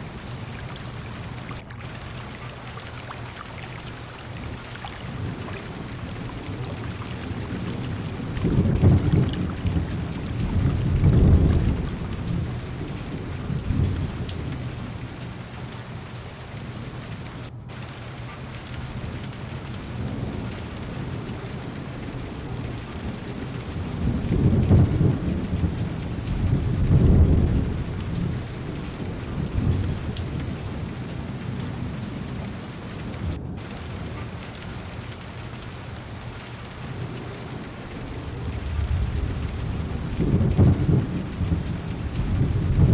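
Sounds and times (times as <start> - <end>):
heavy rain on a car: 0.0 - 42.9
thunder rumbling: 0.0 - 42.9.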